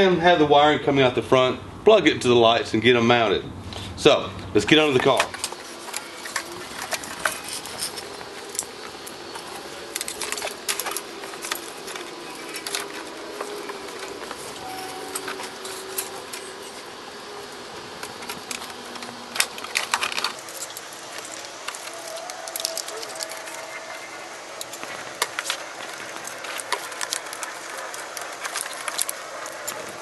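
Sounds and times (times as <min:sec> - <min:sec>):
wiring clicks and rattles: 0:04.7 - 0:16.9, 0:17.8 - 0:30.0.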